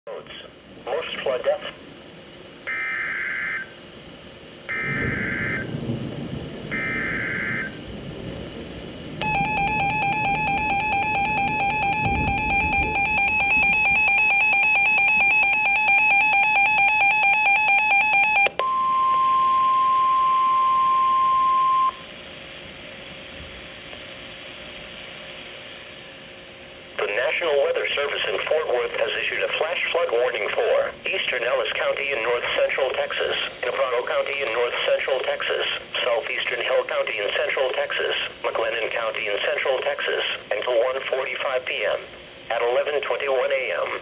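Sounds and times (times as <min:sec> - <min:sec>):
pulsing two-tone attention signal: 0:04.7 - 0:05.7, 0:06.7 - 0:07.8, 0:09.2 - 0:22.0
steady single tone: 0:06.7 - 0:07.8, 0:18.6 - 0:22.1
data screech bursts: 0:09.2 - 0:18.5.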